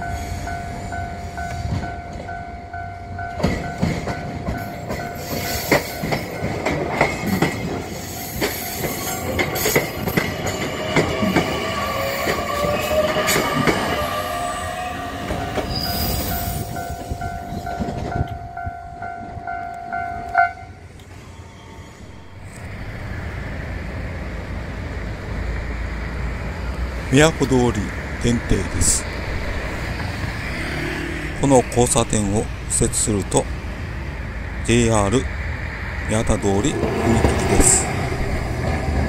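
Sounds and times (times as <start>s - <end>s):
train wheels clacking over rail joints: 3.4s - 14.0s
level crossing alarm ringing: 13.8s - 20.8s.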